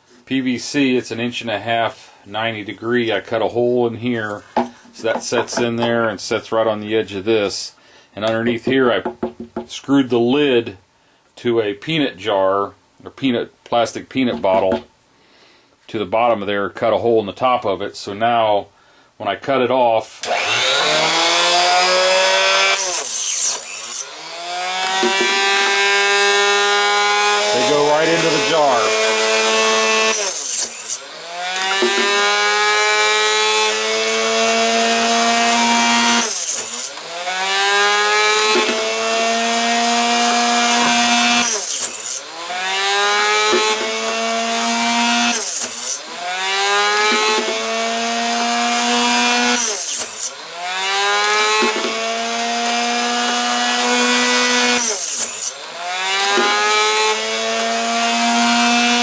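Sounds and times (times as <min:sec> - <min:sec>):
electric chop saw cutting metal: 0:20.1 - 0:59.0.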